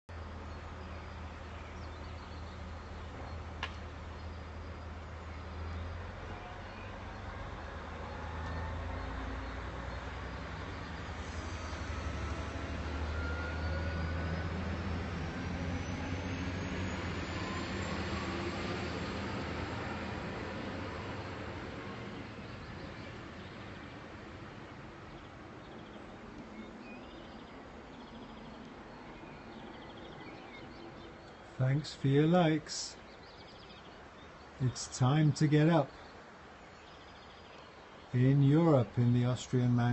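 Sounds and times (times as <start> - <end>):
songbirds trilling: 0.1 - 18.0, 20.0 - 39.9
birds chirping: 0.1 - 39.9
steady background hiss: 31.3 - 39.9.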